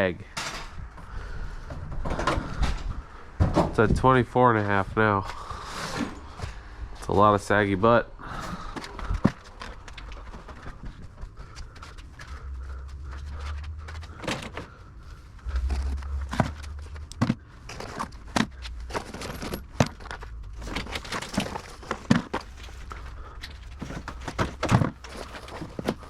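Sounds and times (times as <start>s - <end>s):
low rumble: 4.8s - 22.0s
objects being handled: 8.4s - 26.0s.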